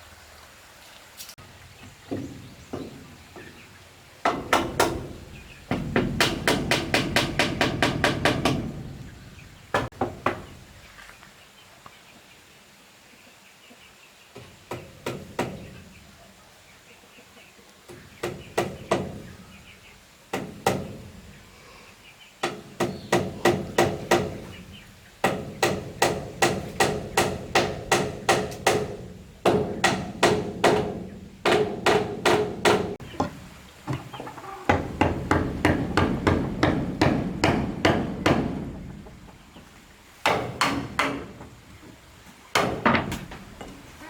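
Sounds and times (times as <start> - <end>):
hammer blows on wood: 4.3 - 9.1.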